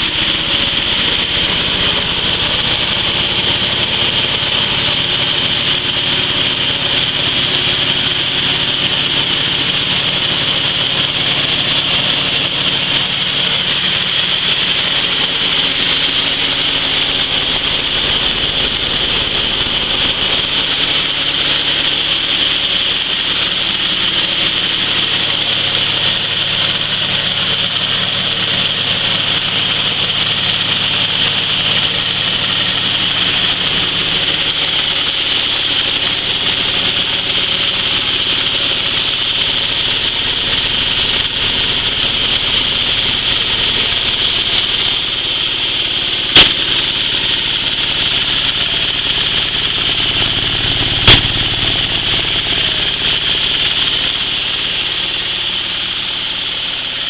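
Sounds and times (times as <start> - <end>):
machine hum and hiss: 0.0 - 57.0
sharp knock: 46.4 - 46.7.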